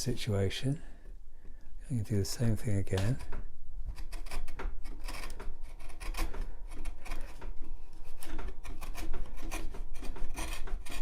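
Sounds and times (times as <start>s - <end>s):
wood chisel scraping wood: 2.9s - 11.0s.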